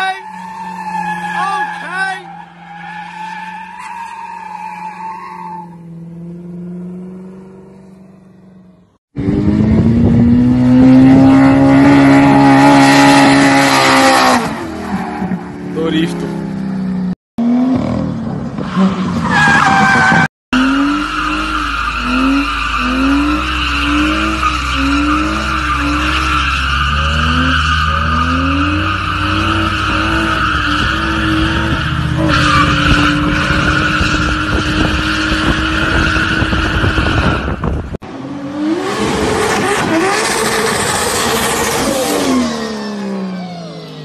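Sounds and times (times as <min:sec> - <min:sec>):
tyres squealing: 0:00.0 - 0:05.8
car engine revving: 0:15.5 - 0:44.0.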